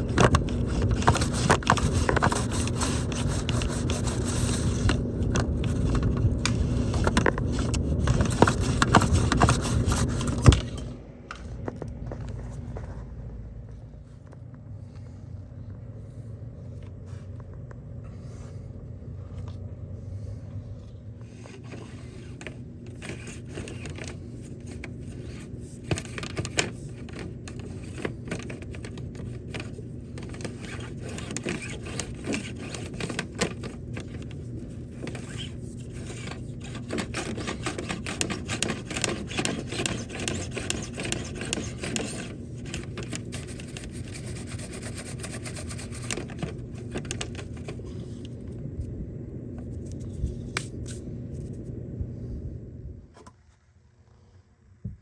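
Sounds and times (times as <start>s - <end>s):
brush scraping inside metal duct: 0.0s - 10.6s, 21.2s - 48.3s
steady low hum: 0.0s - 55.0s.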